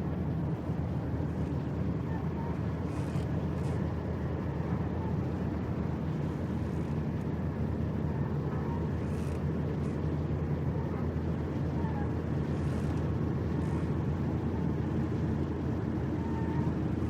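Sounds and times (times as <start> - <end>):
ship engine low rumble: 0.0 - 17.0.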